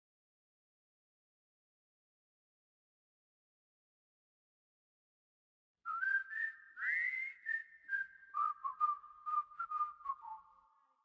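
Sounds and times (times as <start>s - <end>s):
person whistling a tune: 5.9s - 10.6s.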